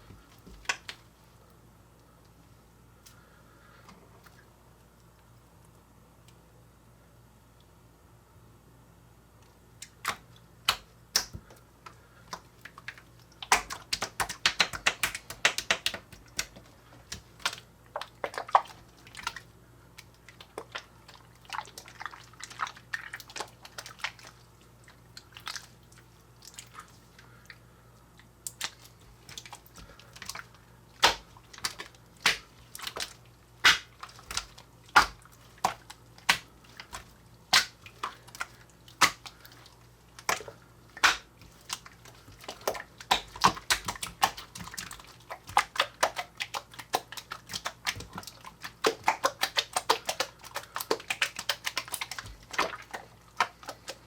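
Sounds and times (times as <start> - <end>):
slime wet pops and clicks: 9.8 - 11.5, 13.4 - 17.6, 31.0 - 39.4, 40.2 - 54.0.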